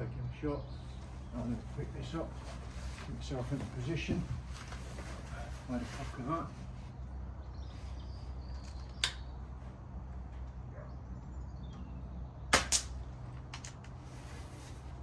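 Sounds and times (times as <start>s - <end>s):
pellet striking target: 12.5s - 13.0s
air rifle firing: 12.5s - 13.1s.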